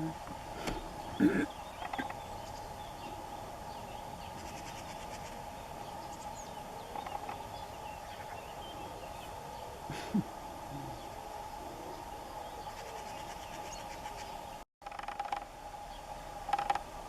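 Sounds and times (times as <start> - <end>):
insect drone: 0.0 - 17.0.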